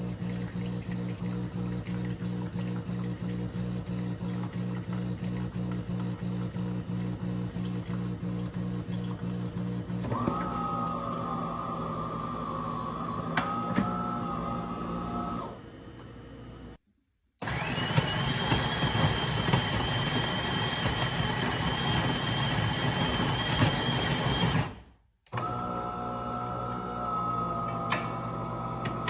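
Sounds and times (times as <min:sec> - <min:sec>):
coffee machine motor humming: 0:00.0 - 0:16.8, 0:25.3 - 0:29.0.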